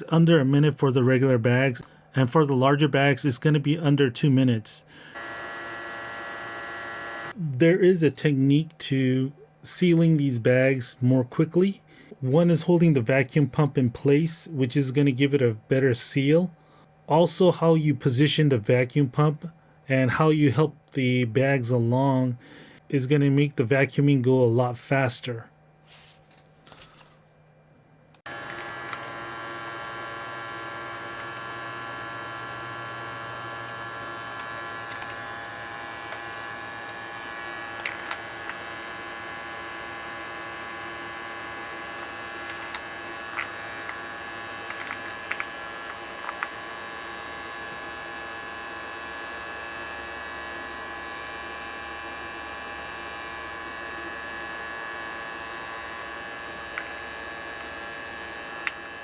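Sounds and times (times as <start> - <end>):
electric vacuum pump humming: 4.9 - 7.5, 28.2 - 59.0
small clicks: 31.1 - 31.5, 34.4 - 35.3, 37.7 - 38.6, 41.9 - 44.0, 44.7 - 46.6.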